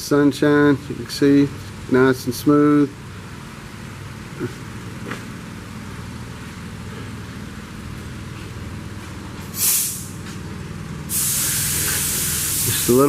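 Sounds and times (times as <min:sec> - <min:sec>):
low mechanical hum: 0:00.0 - 0:13.0
burst of hiss: 0:09.6 - 0:10.2, 0:11.1 - 0:13.0.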